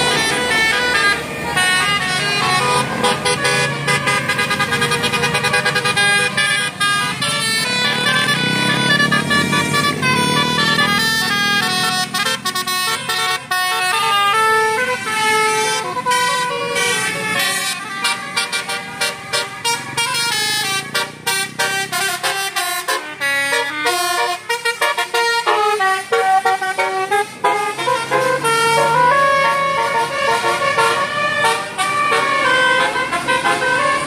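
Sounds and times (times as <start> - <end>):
musical air horn melody: 0.0 - 34.0.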